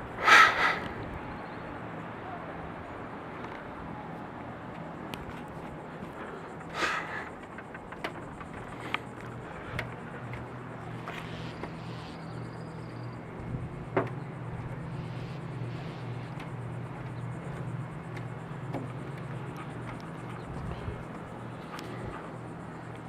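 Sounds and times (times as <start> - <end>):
air conditioner unit humming: 0.0 - 23.0
light clicks: 15.8 - 23.0.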